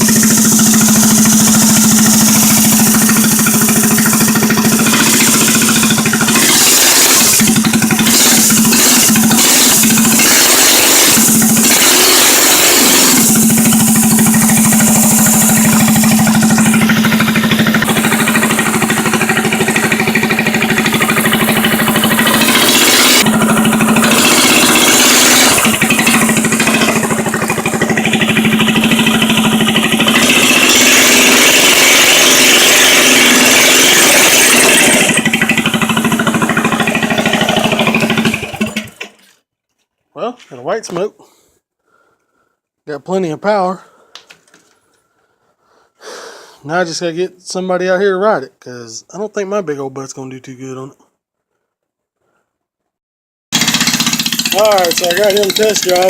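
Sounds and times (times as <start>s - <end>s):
small engine running loud: 0.0s - 39.1s, 53.6s - 56.0s.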